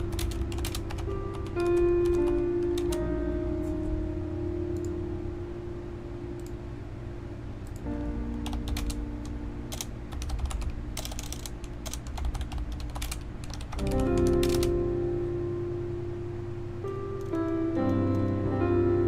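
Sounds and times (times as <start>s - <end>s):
mechanical keyboard keys clacking: 0.0s - 3.1s, 7.7s - 14.8s, 17.2s - 18.4s
background music with held notes: 0.0s - 19.0s.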